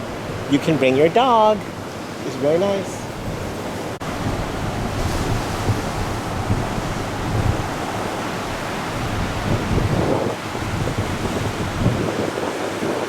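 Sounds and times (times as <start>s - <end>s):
ocean surf washing ashore: 0.0s - 13.0s
wind buffeting microphone: 3.0s - 13.0s.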